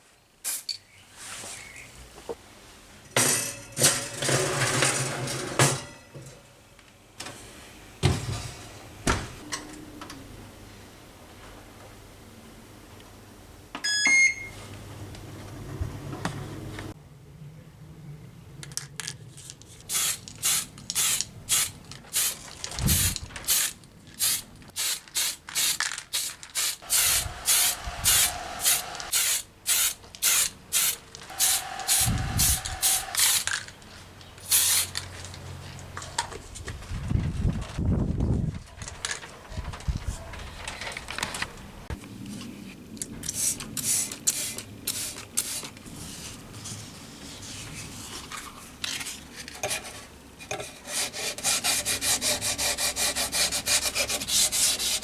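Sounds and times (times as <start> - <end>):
short hissing strokes: 19.9 - 33.6, 34.4 - 35.0.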